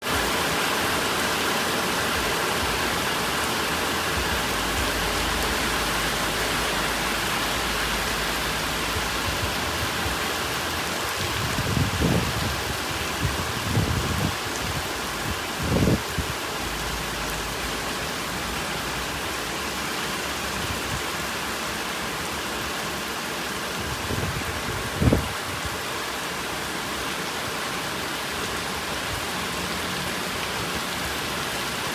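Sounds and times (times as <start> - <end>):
heavy rain falling: 0.0 - 31.9
low rumbles: 2.2 - 19.5.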